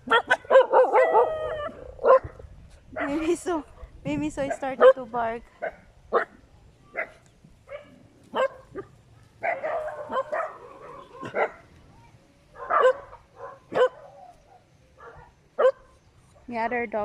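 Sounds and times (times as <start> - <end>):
dogs barking: 0.0 - 2.4, 4.4 - 11.7, 12.5 - 15.9.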